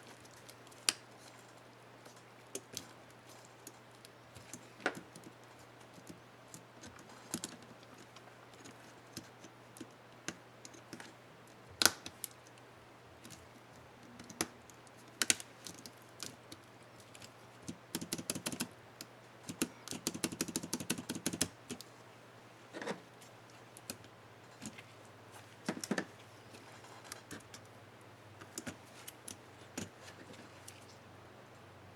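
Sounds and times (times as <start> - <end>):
laptop keyboard key clicks: 19.5 - 21.8.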